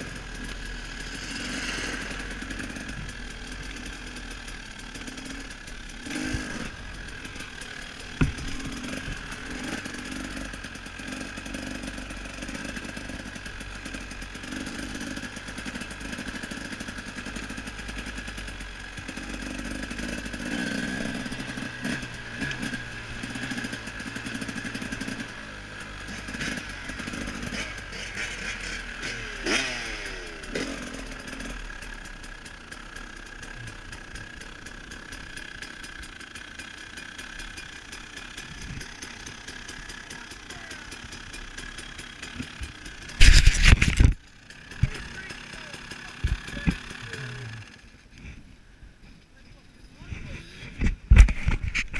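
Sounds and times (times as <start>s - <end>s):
dirt bike engine running: 0.0s - 49.0s, 49.7s - 51.9s
brief clatter: 43.2s - 44.2s, 50.1s - 51.9s.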